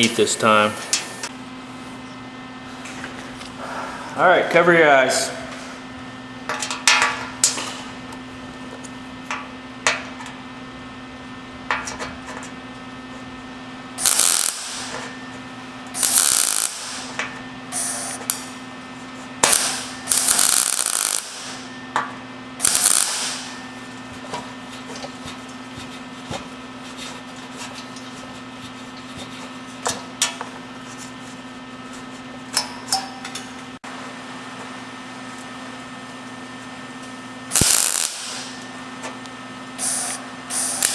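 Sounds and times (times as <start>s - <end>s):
welder electrical hum: 0.0s - 40.9s
welding arc crackling: 14.0s - 15.1s, 15.9s - 17.2s, 19.4s - 21.7s, 22.6s - 26.0s, 37.5s - 38.7s, 39.8s - 40.9s.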